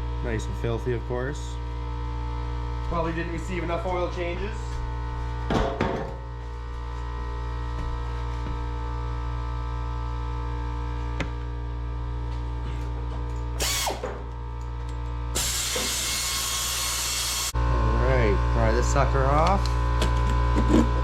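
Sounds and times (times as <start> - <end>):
electrical hum: 0.0 - 21.0
power tool running: 13.5 - 14.4, 15.3 - 21.0.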